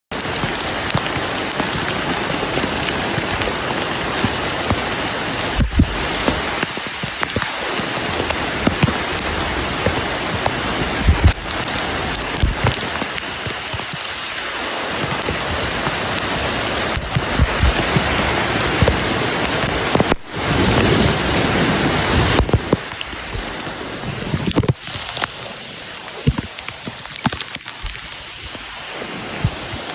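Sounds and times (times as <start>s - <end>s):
rushing river water: 0.1s - 29.9s.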